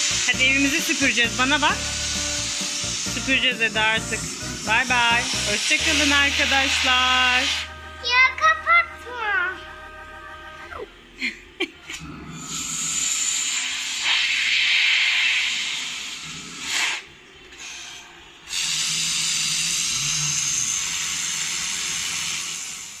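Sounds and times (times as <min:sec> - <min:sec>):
vacuum cleaner suction hiss: 0:00.0 - 0:07.7, 0:12.4 - 0:23.0.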